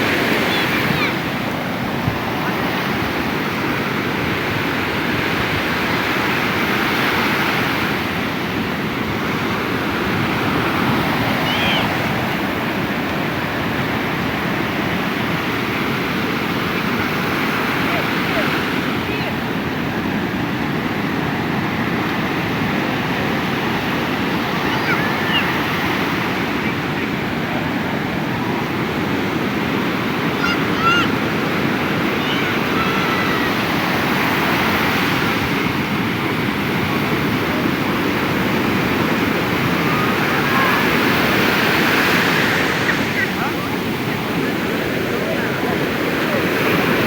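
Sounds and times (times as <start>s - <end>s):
sea surf washing onto beach: 0.0s - 47.0s
distant people crying out: 30.3s - 34.5s, 39.1s - 47.0s.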